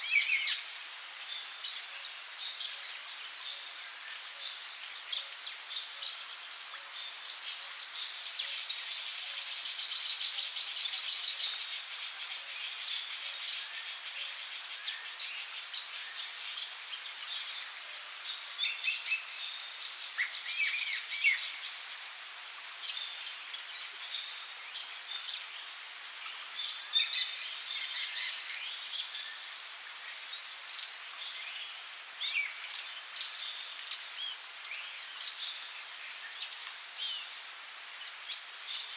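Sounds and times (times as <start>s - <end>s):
high insect drone: 0.0s - 38.9s.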